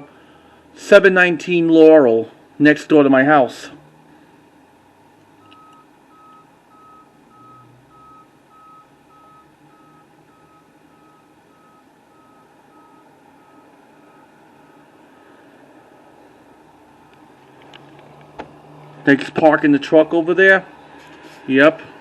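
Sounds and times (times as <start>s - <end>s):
low engine hum: 3.3s - 22.0s
reversing alarm beeping: 5.4s - 14.9s.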